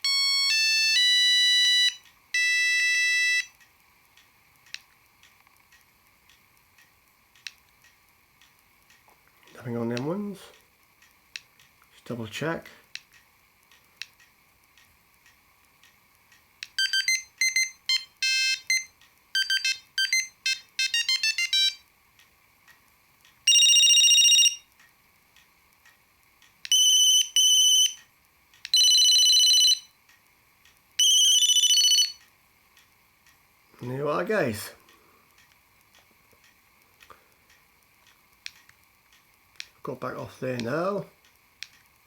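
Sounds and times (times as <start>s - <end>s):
long held beeps: 0.0s - 3.5s, 16.8s - 21.8s, 23.5s - 24.7s, 26.7s - 28.0s, 28.7s - 30.0s, 31.0s - 32.2s
phone ringtone beeps: 0.0s - 3.5s, 16.8s - 21.8s, 23.5s - 24.7s, 26.7s - 28.0s, 28.7s - 29.9s, 31.0s - 32.2s
faint clicks: 3.5s - 12.0s, 12.8s - 16.8s, 34.8s - 39.8s, 40.6s - 42.0s.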